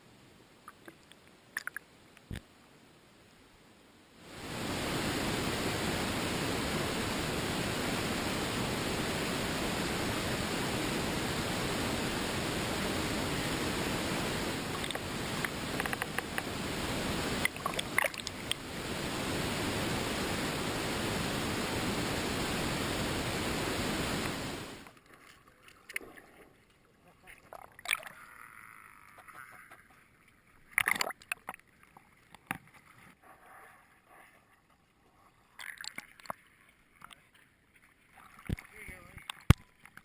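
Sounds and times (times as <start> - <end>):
rushing water: 4.2 - 28.2, 35.4 - 40.0.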